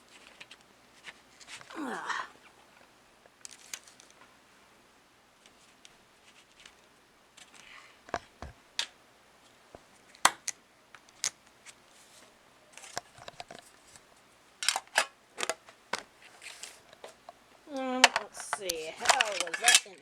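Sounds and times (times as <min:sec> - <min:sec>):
faint rustling: 0:11.0 - 0:14.4
clicks of pen parts handled: 0:18.0 - 0:20.0.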